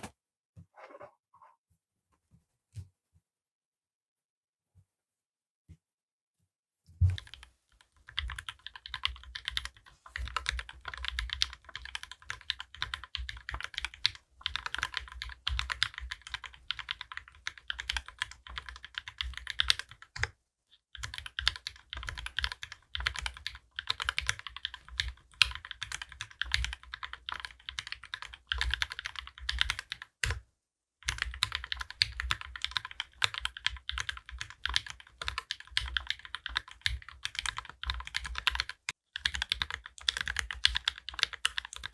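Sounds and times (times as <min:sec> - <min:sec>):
fast mechanical keyboard typing: 0:08.1 - 0:20.3, 0:21.0 - 0:30.4, 0:31.0 - 0:41.9.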